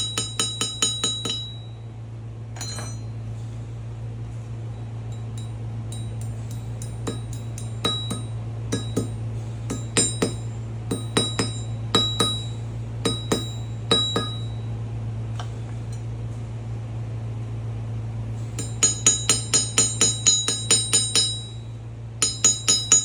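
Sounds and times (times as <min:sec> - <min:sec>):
steady low hum: 0:00.0 - 0:23.0
glassy clinks: 0:02.6 - 0:03.2.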